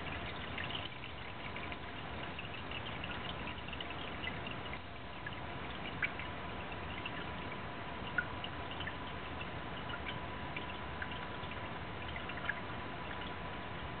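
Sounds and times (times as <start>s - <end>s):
faint high hum: 0.0s - 14.0s
water trickling and dripping: 0.0s - 14.0s.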